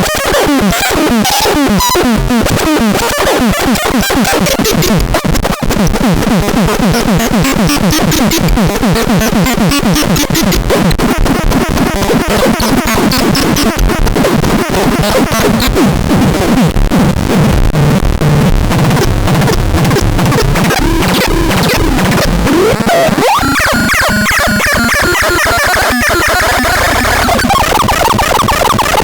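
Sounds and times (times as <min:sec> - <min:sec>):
crackly noise: 0:00.0 - 0:29.0
falling synthesizer pitch sweeps: 0:19.4 - 0:28.4.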